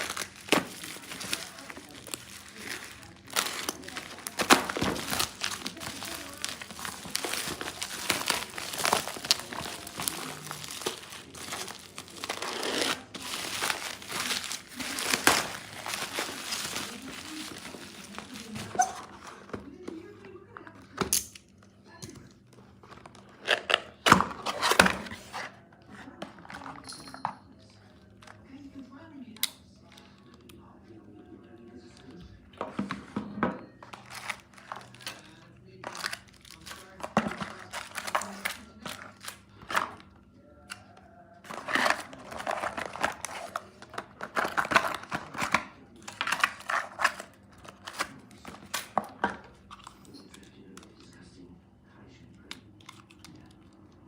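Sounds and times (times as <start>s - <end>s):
scraping: 0.0s - 19.2s
packaging rustling and crinkling: 0.0s - 19.7s, 33.8s - 40.2s, 41.4s - 50.0s.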